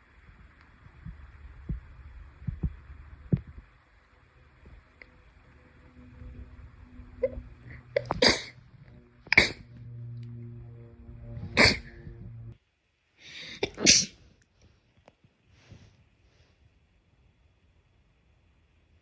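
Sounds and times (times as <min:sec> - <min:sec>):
person sneezing: 0:13.4 - 0:14.2.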